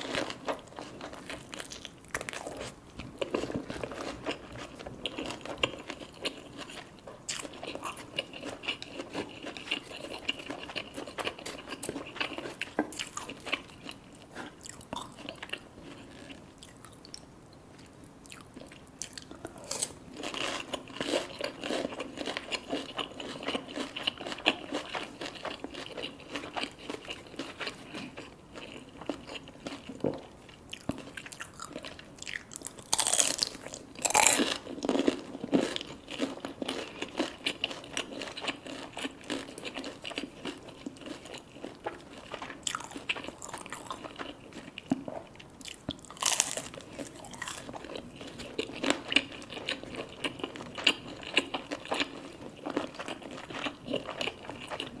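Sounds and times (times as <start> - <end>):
crunchy fried food chewing: 0.0 - 55.0.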